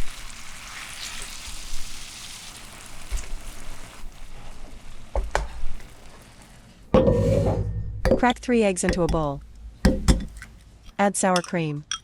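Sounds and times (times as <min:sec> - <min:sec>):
chicken sizzling in a pan: 0:00.0 - 0:06.7
knocks: 0:07.0 - 0:10.5.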